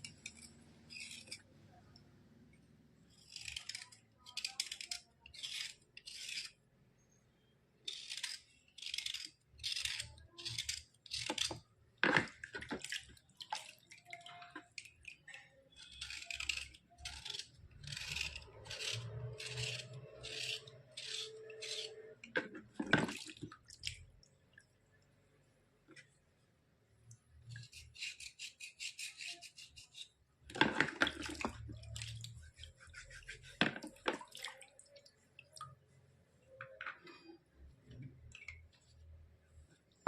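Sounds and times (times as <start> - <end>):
scraping strokes on a board: 15.8 - 22.1, 27.4 - 30.7, 32.4 - 33.8.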